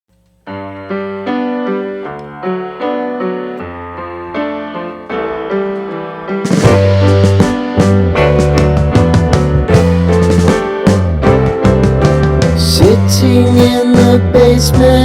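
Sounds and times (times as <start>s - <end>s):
electric piano chords: 0.4s - 15.0s
drum kit with crash cymbal: 6.4s - 14.2s.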